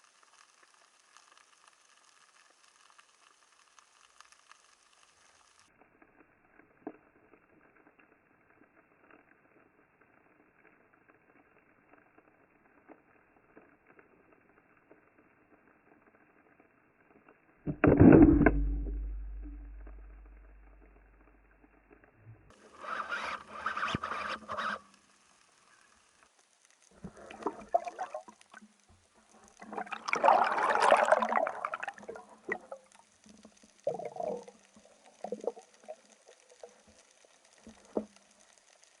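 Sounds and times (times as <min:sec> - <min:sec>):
water bubbling and sloshing: 0:17.7 - 0:22.7, 0:26.9 - 0:38.5.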